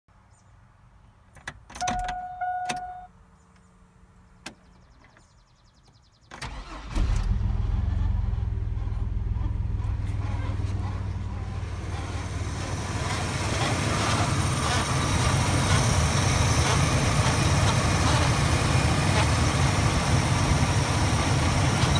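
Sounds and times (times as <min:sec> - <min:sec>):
dashboard warning chime: 0:01.8 - 0:03.1
engine cranking and starting: 0:06.3 - 0:21.9
engine grinding noise: 0:06.4 - 0:21.9.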